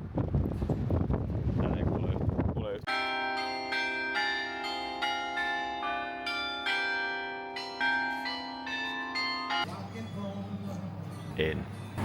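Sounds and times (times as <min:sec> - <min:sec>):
bells ringing in sequence: 0:02.9 - 0:10.3.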